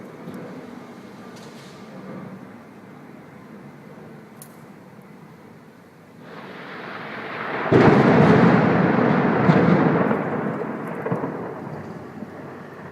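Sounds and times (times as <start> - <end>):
thunder crack: 6.2 - 12.9
thunder rumbling: 6.2 - 12.9.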